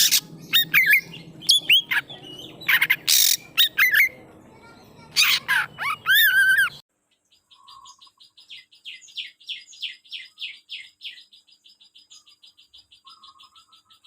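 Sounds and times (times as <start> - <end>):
songbird ringing calls: 12.0 - 14.0.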